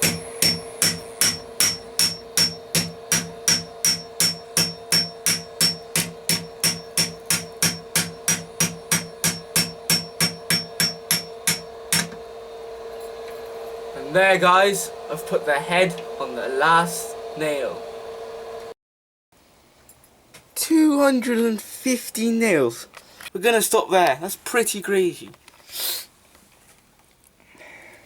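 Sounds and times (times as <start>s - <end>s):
hammer ringing on anvil: 0.0s - 12.2s.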